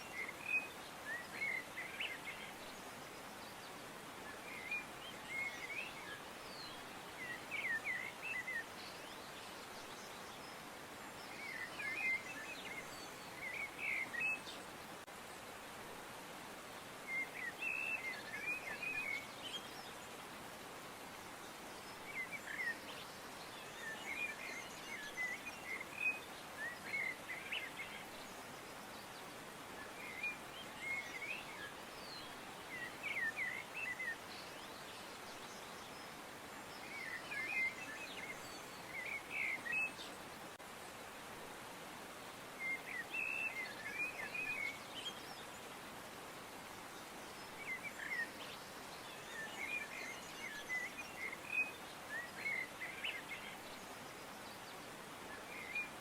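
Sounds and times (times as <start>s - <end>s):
steady background hiss: 0.0s - 56.0s.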